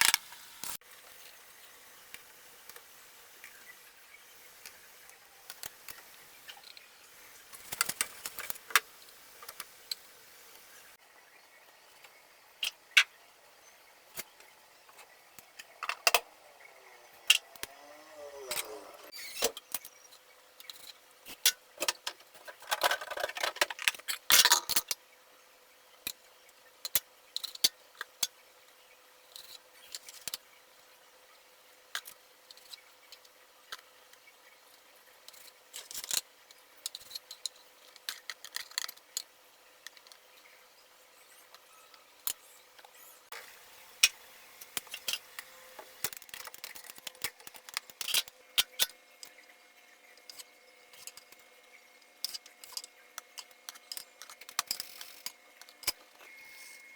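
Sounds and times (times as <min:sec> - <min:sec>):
kitchen clicks and clinks: 0:21.8 - 0:25.0.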